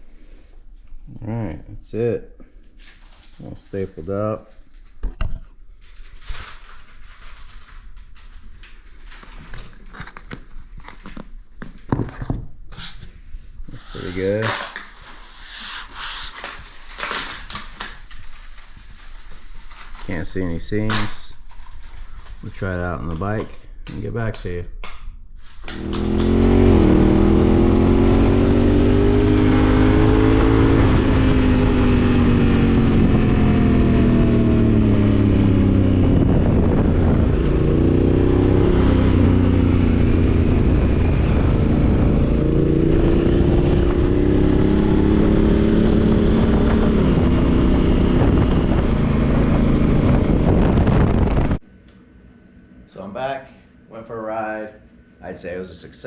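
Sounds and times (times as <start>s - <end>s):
motorcycle engine accelerating: 25.7s - 51.6s.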